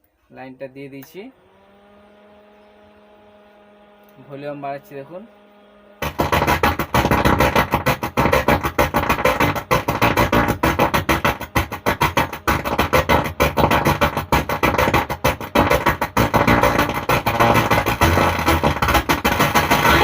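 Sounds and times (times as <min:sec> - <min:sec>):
amplifier fault noise: 0:00.8 - 0:20.0
loud music through a speaker: 0:06.0 - 0:20.0.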